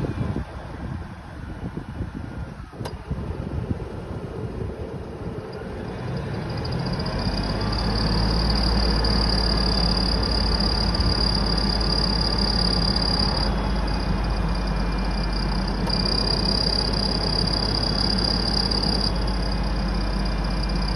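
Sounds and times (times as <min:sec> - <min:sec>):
car engine running: 0:00.0 - 0:20.9
high-pitched belt squeal: 0:05.6 - 0:20.9.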